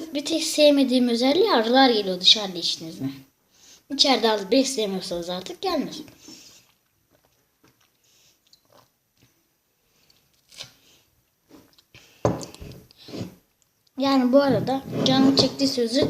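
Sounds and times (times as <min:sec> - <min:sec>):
person sipping and swallowing: 0:06.1 - 0:09.4.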